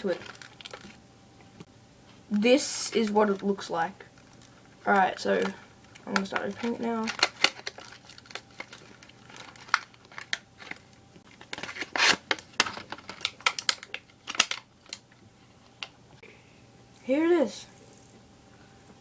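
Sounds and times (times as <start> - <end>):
packaging clicks and crinkles: 0.0 - 1.0, 2.8 - 16.0.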